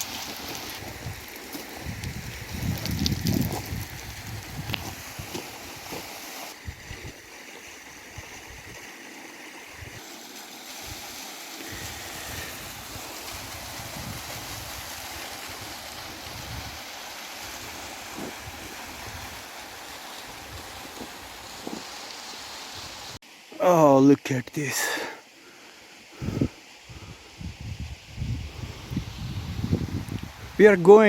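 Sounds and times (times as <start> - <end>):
wind buffeting microphone: 0.8 - 5.9, 11.7 - 16.8, 26.2 - 30.6.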